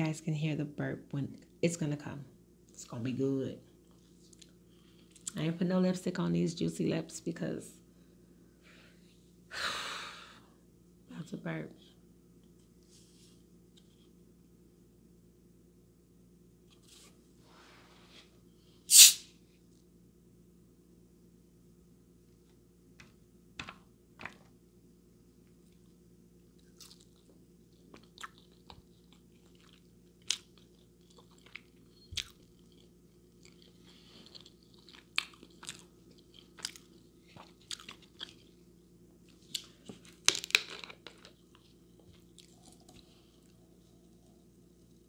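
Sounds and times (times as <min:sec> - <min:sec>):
close chewing with wet crunches: 0:26.6 - 0:38.6.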